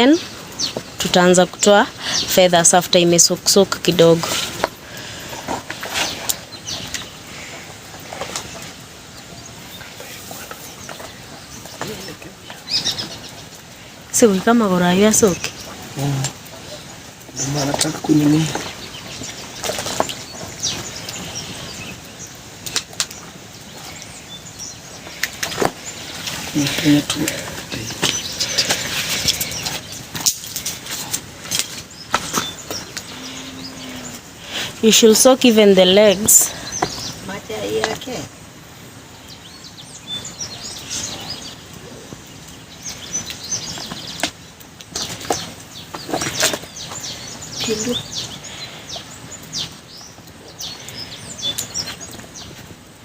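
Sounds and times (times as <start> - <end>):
outdoor background: 0.0 - 53.0
small birds chirping: 0.0 - 53.0.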